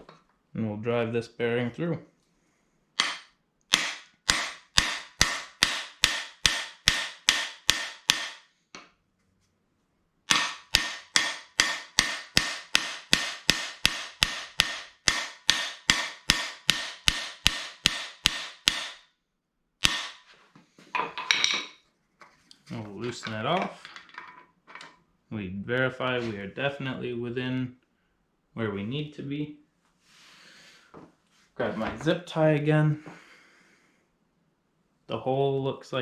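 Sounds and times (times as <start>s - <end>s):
hammer striking metal bar: 3.0s - 8.5s, 10.3s - 19.1s, 19.8s - 20.2s.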